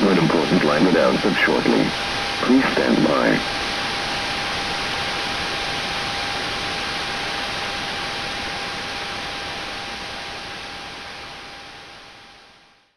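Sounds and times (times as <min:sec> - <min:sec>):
broadcast static hiss: 0:00.0 - 0:12.9.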